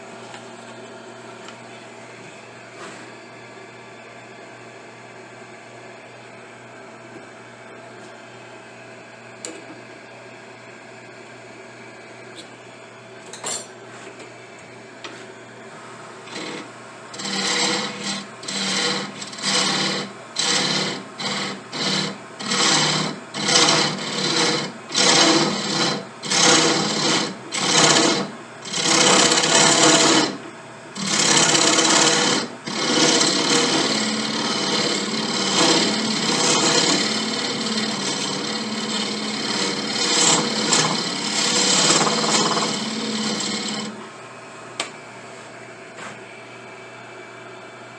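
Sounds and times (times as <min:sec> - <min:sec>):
rasp filing wood: 0:16.3 - 0:30.4, 0:31.0 - 0:44.0.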